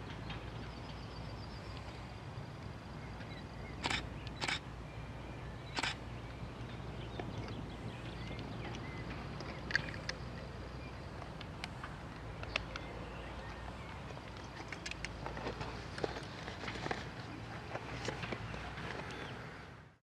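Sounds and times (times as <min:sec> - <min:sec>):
faint bird chirps: 0:02.9 - 0:11.1.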